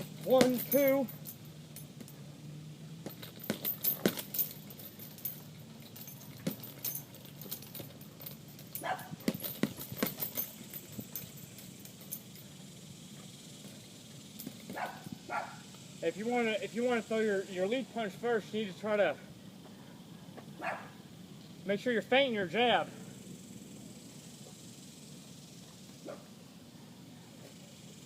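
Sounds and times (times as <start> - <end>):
gloves hitting punching bag: 0.0 - 0.8, 9.2 - 10.4
light metallic jangle: 0.0 - 19.2.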